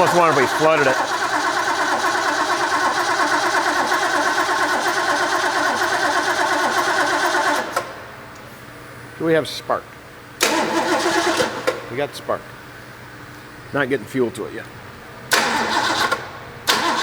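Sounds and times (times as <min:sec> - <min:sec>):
engine starter cranking: 0:00.0 - 0:08.0, 0:10.4 - 0:11.9, 0:15.3 - 0:17.0.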